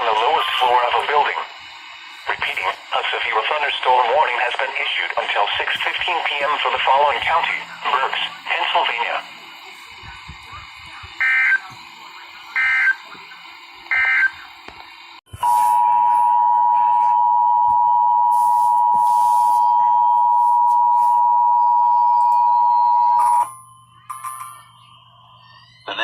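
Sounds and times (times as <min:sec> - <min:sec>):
receiver hiss: 0:00.0 - 0:17.1, 0:18.2 - 0:21.4.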